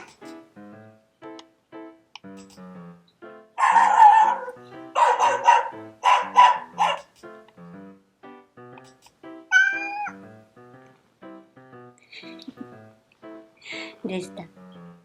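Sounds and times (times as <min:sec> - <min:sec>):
background music: 0:00.0 - 0:15.0
dog barking: 0:03.6 - 0:07.1
cat meowing: 0:09.5 - 0:10.2.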